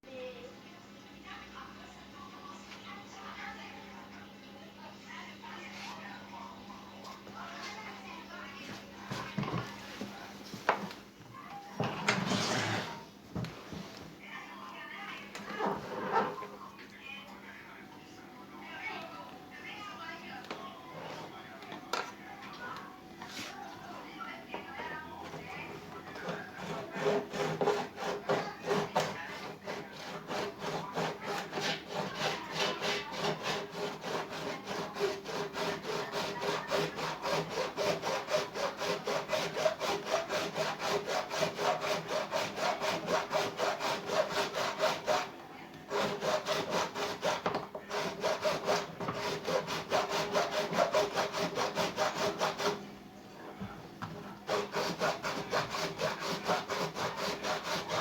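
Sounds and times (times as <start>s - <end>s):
hand saw cutting plastic: 26.1s - 45.3s, 45.9s - 52.8s, 54.5s - 58.0s.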